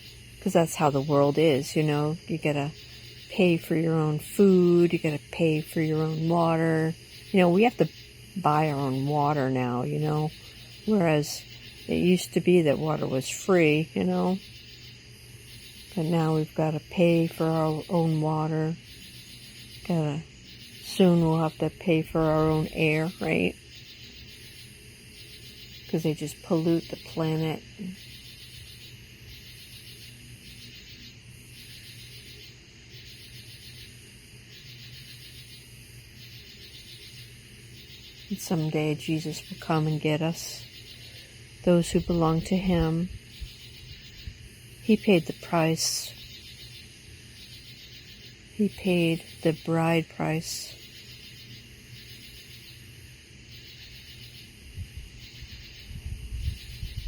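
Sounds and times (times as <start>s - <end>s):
night insects chirping: 0.0s - 57.0s.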